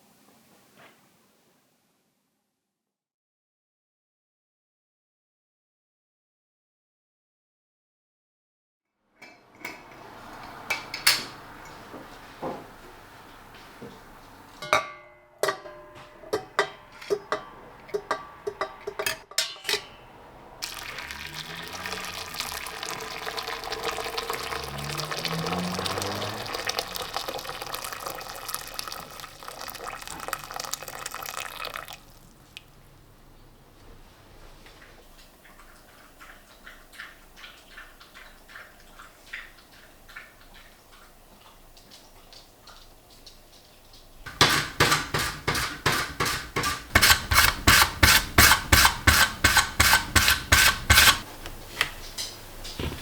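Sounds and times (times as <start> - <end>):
water running into a container: 20.6 - 32.9, 44.2 - 51.3.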